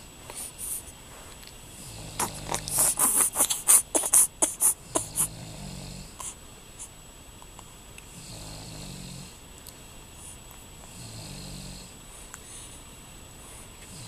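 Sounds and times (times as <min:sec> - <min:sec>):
low snoring: 0:01.8 - 0:03.2, 0:04.8 - 0:06.2, 0:08.1 - 0:09.4, 0:10.9 - 0:12.0.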